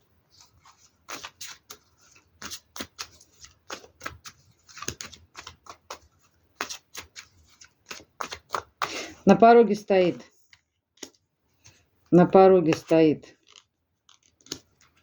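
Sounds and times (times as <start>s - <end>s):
cards being shuffled: 0.4s - 9.1s, 12.6s - 15.0s.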